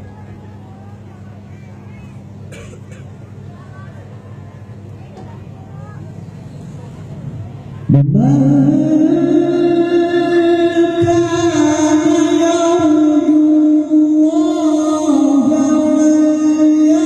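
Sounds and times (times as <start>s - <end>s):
man reciting melodiously: 7.9s - 17.0s.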